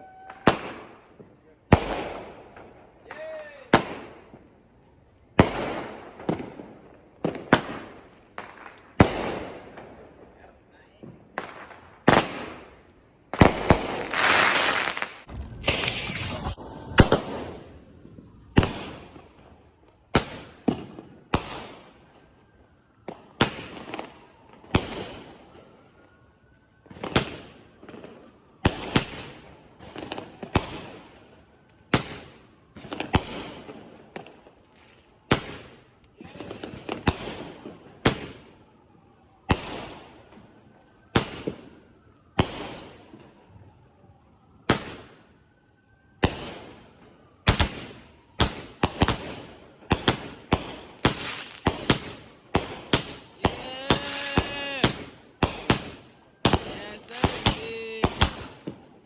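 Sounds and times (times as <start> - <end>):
fireworks whistle: 0.0 - 1.0, 13.4 - 19.3, 53.0 - 58.5
fireworks bangs: 0.0 - 4.5, 5.4 - 22.2, 46.2 - 58.9
fireworks crackle: 5.4 - 22.0, 46.3 - 58.9.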